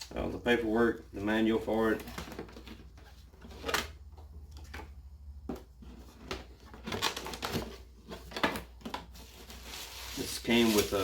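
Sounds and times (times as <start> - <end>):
paper and cardboard rustling: 1.2 - 4.9, 5.5 - 11.0.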